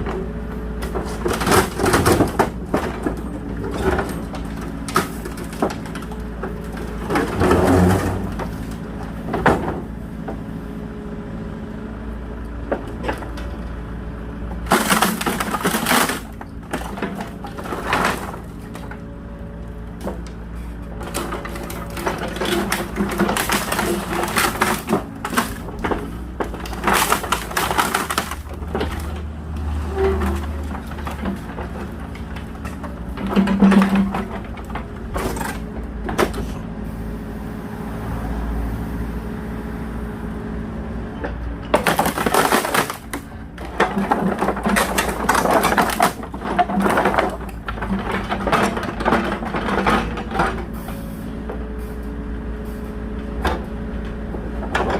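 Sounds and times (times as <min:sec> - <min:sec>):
excavator engine running: 0:00.0 - 0:54.9
wooden pallets cracking and splintering: 0:00.8 - 0:10.4, 0:14.5 - 0:36.6, 0:41.6 - 0:50.8, 0:53.4 - 0:54.9.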